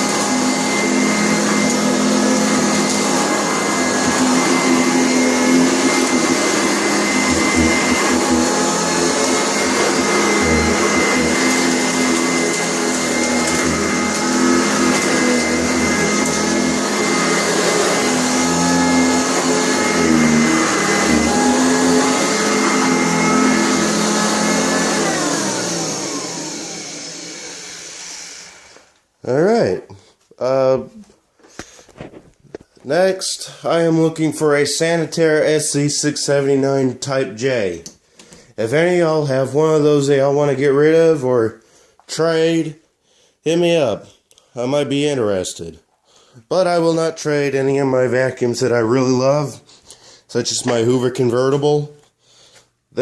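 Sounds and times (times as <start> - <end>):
vacuum motor spinning down: 0.0 - 28.8
vacuum cleaner motor whine: 0.0 - 29.0.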